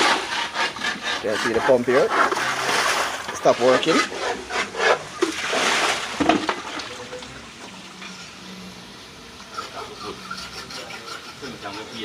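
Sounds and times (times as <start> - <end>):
water splashing and sloshing: 1.8 - 8.2.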